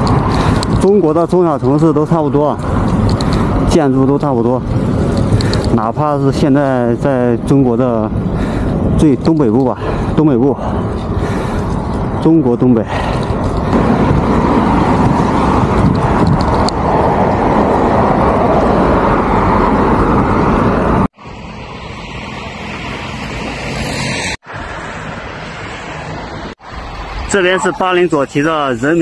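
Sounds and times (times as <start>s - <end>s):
wind rush while cycling: 0.0s - 21.1s
street traffic: 0.0s - 29.0s.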